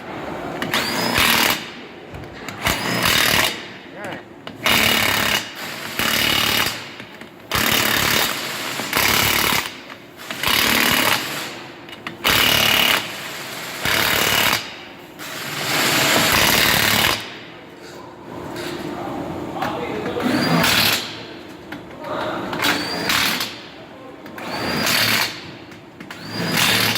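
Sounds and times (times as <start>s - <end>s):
impact wrench hammering: 0.6s - 17.6s, 20.4s - 21.3s, 22.5s - 23.7s, 24.4s - 26.9s.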